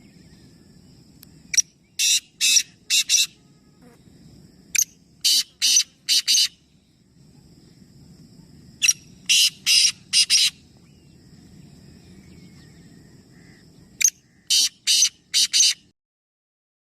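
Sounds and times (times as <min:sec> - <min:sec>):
bird giving harsh screechy calls: 0:02.0 - 0:03.4, 0:05.2 - 0:06.6, 0:08.8 - 0:10.6, 0:13.4 - 0:15.9.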